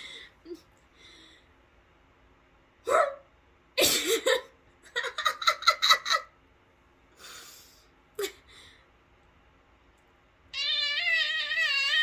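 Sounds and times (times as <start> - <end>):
girl making squeaky vocal noises: 10.6 - 12.0.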